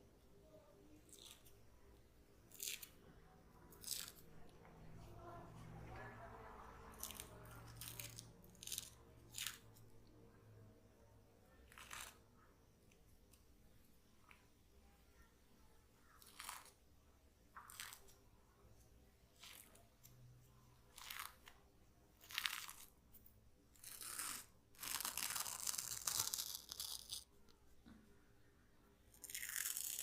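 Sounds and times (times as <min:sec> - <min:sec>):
peel-off mask tearing from skin: 0:23.8 - 0:27.3.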